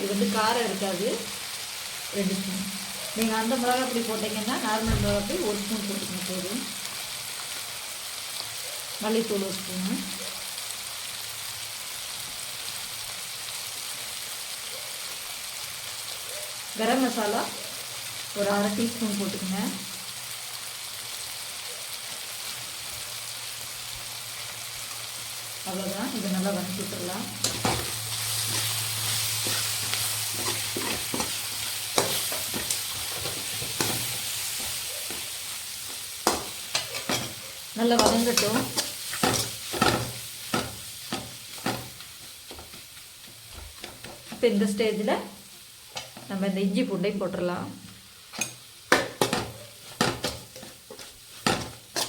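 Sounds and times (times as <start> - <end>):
masala sizzling in oil: 0.0 - 52.0
stirring tool scraping a pan: 27.4 - 42.9, 49.2 - 52.0.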